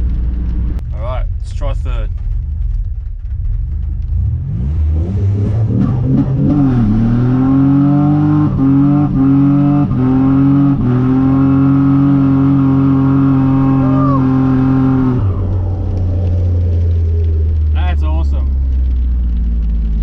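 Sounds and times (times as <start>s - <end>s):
car engine revving hard: 4.1s - 16.9s.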